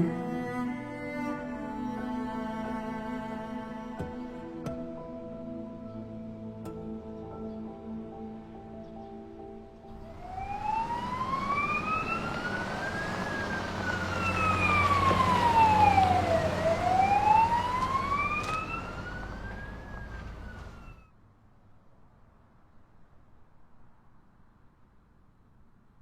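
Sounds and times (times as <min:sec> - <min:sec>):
fire engine siren wailing: 0:09.9 - 0:21.0
truck driving rumble: 0:09.9 - 0:21.0.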